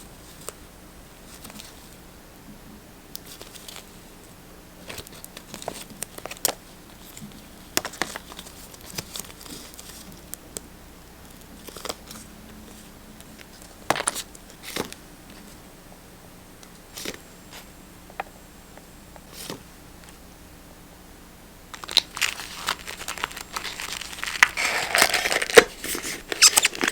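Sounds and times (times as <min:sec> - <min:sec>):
paper rustling and crinkling: 0:03.2 - 0:04.0, 0:04.8 - 0:10.3, 0:11.5 - 0:15.6, 0:21.7 - 0:26.9.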